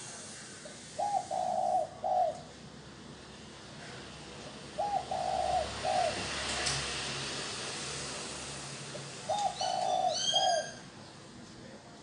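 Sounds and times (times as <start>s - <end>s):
dove cooing: 1.0s - 2.5s, 4.7s - 6.2s, 9.3s - 10.8s.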